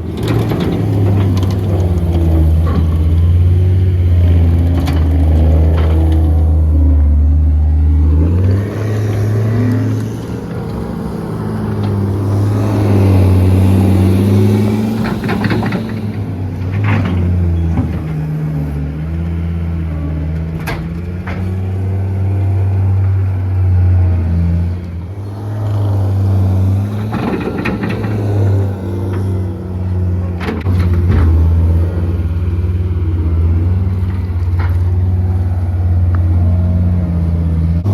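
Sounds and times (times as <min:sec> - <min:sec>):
heavy machine engine working: 0:00.0 - 0:37.9.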